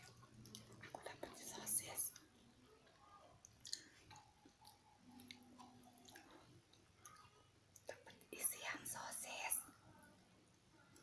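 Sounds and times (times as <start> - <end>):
faint chewing: 0.0 - 11.0
wet mouth clicks: 3.5 - 6.3.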